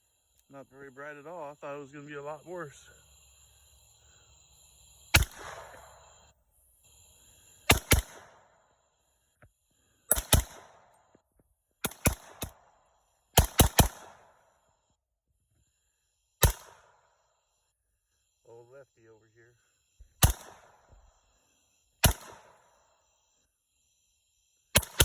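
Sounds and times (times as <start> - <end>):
suppressed gunshots with echo: 5.1 - 6.0, 7.7 - 8.6, 10.1 - 11.0, 11.8 - 12.8, 13.4 - 14.4, 16.4 - 17.0, 20.2 - 21.1, 22.0 - 22.9, 24.8 - 25.0.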